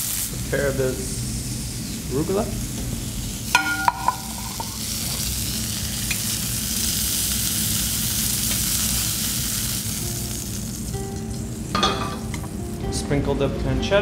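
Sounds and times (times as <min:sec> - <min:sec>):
livers sizzling in a pan: 0:00.0 - 0:13.2
metallic clinks: 0:03.6 - 0:04.8.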